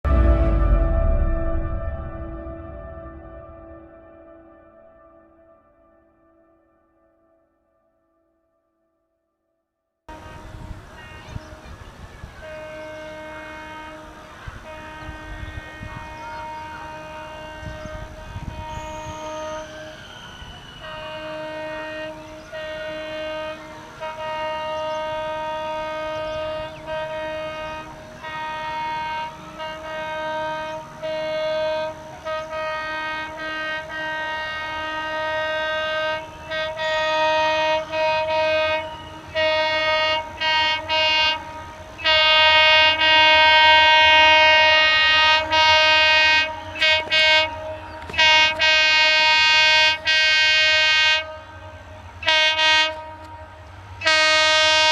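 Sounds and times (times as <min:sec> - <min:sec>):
low rumble of train: 0:00.0 - 0:07.0, 0:10.1 - 0:54.9
locomotive two-note air horn: 0:00.0 - 0:07.1, 0:12.3 - 0:54.9.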